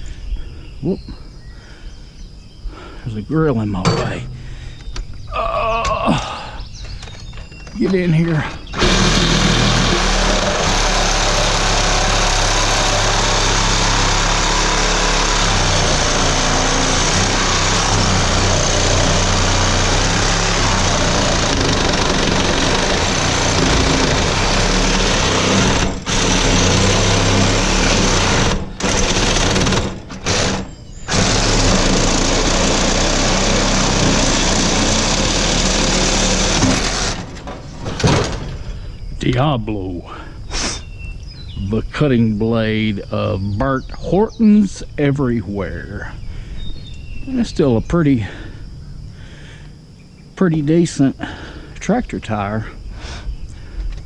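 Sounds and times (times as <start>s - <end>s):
reciprocating saw cutting steel: 8.6s - 37.3s.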